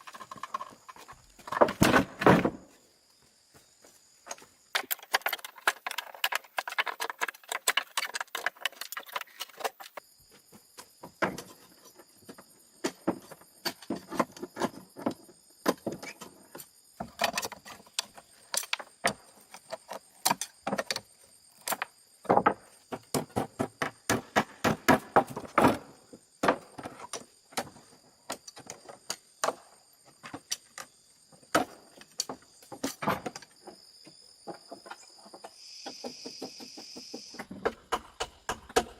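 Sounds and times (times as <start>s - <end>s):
insect chirring: 0.0s - 24.2s, 25.8s - 38.9s
hard objects clattering: 4.7s - 10.0s.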